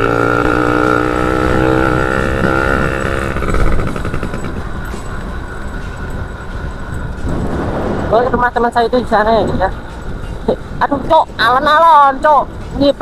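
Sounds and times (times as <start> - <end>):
motorbike engine running: 0.0 - 8.6
rushing wind and road noise: 0.0 - 13.0.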